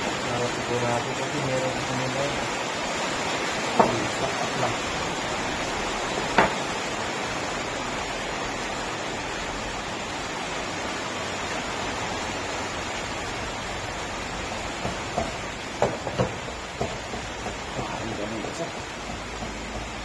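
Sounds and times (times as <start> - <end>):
steady hissing: 0.0 - 7.8.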